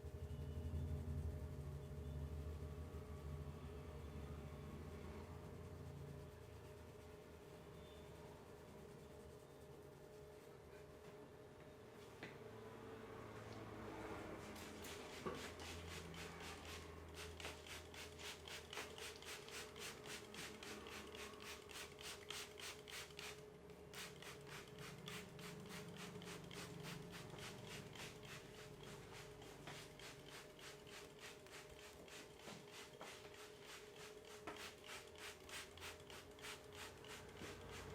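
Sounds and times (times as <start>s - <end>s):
faint steady hum: 0.0s - 37.9s
hands rubbing hair: 14.4s - 23.4s, 24.0s - 37.9s.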